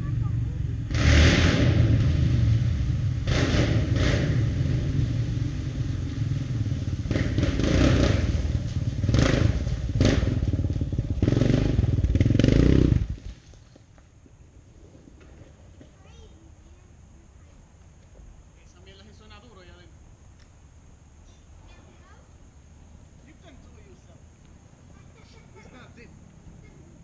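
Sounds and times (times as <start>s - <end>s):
quad bike engine revving: 0.0s - 13.3s.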